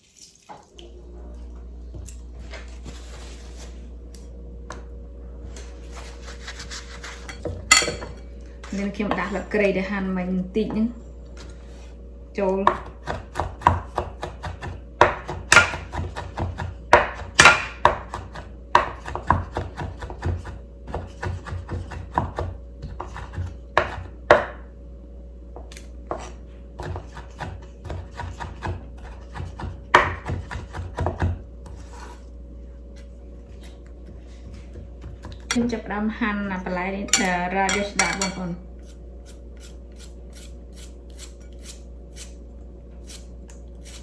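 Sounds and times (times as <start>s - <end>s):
knife chopping on wooden board: 12.7s - 24.5s, 26.1s - 31.8s.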